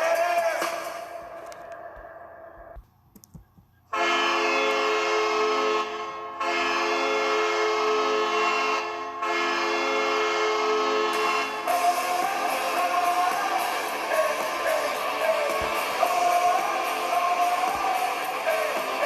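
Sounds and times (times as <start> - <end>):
arena goal horn blasts: 3.9 - 19.0.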